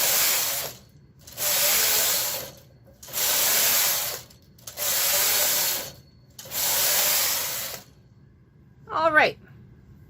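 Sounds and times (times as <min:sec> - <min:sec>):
knitting machine carriage hissing: 0:00.0 - 0:08.0.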